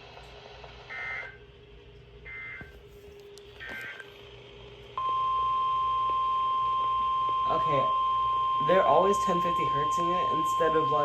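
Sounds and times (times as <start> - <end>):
steady warning alarm tone: 0.9 - 1.4, 2.3 - 2.8, 5.0 - 11.0.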